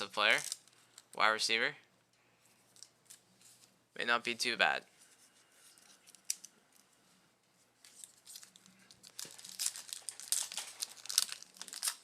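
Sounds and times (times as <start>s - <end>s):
foil wrapper tearing and crinkling: 0.3s - 0.8s, 8.0s - 12.0s.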